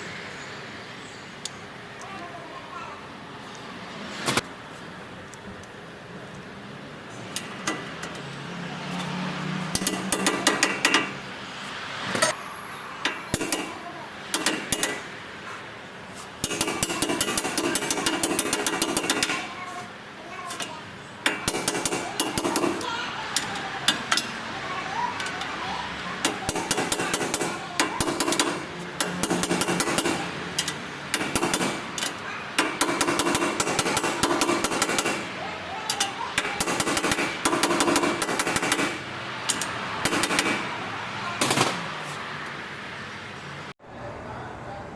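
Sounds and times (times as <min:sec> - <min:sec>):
hammer striking metal: 0:09.7 - 0:11.2, 0:13.0 - 0:15.1, 0:16.4 - 0:19.5, 0:21.2 - 0:22.8, 0:26.2 - 0:40.8, 0:41.4 - 0:41.9.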